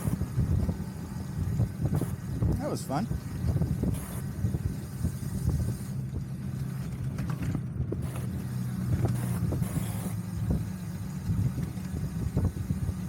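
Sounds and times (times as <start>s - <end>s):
wind on microphone: 0.0s - 6.4s, 7.0s - 13.0s
tyres rumbling: 0.0s - 13.0s
small clicks and rattles: 6.1s - 9.9s.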